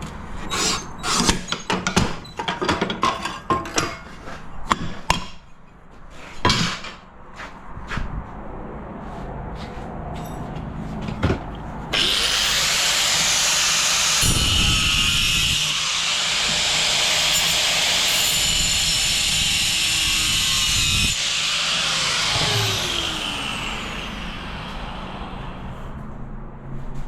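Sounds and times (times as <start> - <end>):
falling whine of tool winding down: 11.9 - 26.0
power cutting tool running: 11.9 - 26.0.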